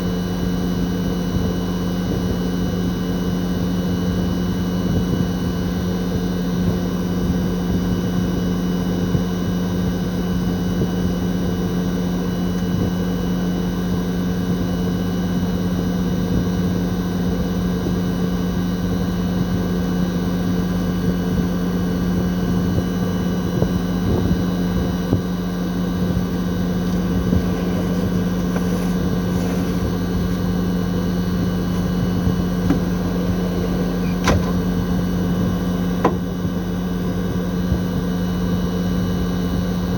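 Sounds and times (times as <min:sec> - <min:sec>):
compressor low hum: 0:19.8 - 0:39.9.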